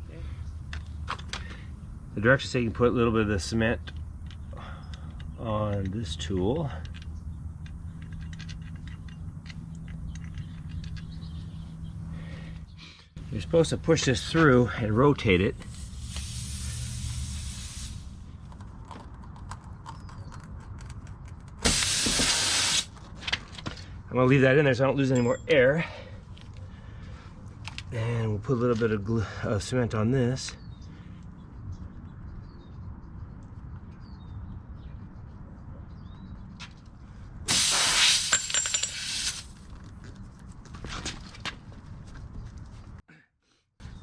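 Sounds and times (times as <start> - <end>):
air hissing from tire: 15.6 - 18.2, 21.6 - 22.9, 37.5 - 39.6.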